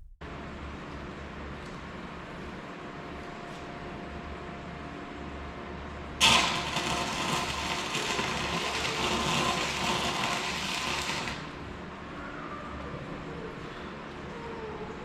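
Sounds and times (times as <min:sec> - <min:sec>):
low steady hum: 0:00.0 - 0:10.7
electric welding arc: 0:06.2 - 0:11.6.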